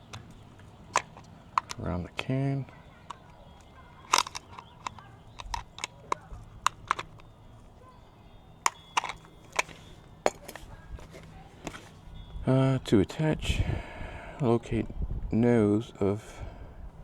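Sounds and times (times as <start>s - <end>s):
plastic and metal can clacking: 0.0s - 7.4s, 8.6s - 12.0s.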